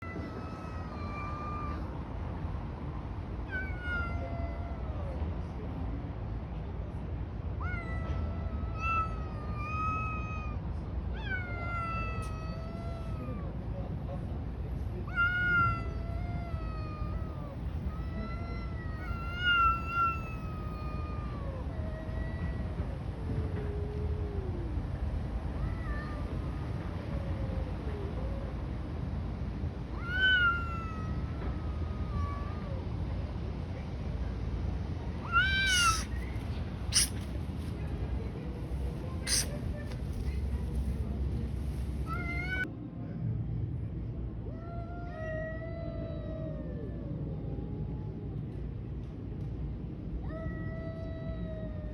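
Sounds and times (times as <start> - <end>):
cats yowling: 0.0 - 2.3, 3.4 - 5.4, 7.6 - 13.7, 15.0 - 28.9, 29.9 - 33.4, 35.2 - 37.4, 38.8 - 39.7, 42.0 - 42.7, 44.4 - 48.2.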